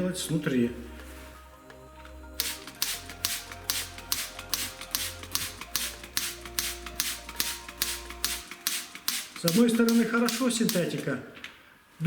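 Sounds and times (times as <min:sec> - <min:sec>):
spray bottle spritzing water: 0:02.4 - 0:11.0.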